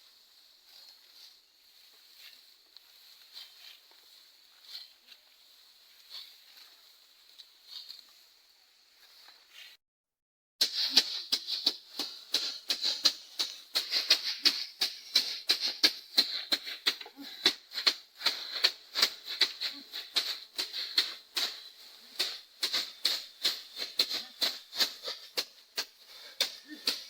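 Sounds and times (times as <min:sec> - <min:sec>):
dry wheat stalks crunching: 0:00.2 - 0:09.7, 0:10.6 - 0:27.0
steady high hiss: 0:10.6 - 0:27.0.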